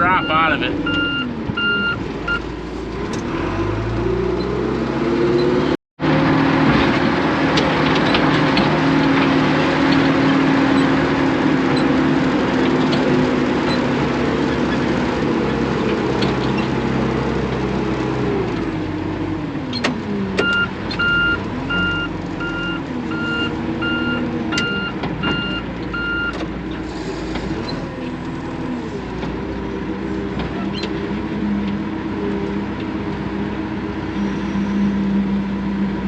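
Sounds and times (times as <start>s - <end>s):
backup alarm beeping: 0.0s - 2.4s
farm machinery engine running: 5.3s - 36.0s.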